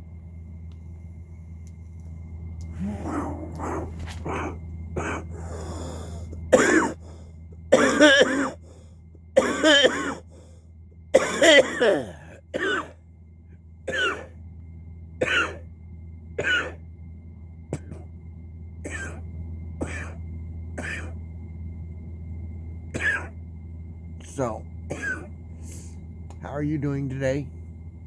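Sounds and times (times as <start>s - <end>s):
steady low hum: 0.0s - 28.0s
man coughing hard: 3.0s - 8.7s, 9.4s - 10.4s, 11.1s - 13.0s, 13.9s - 14.4s, 15.2s - 15.6s, 16.4s - 16.8s, 17.7s - 18.1s, 18.8s - 19.2s, 19.8s - 20.2s, 20.8s - 21.2s, 22.9s - 23.4s, 24.9s - 25.3s.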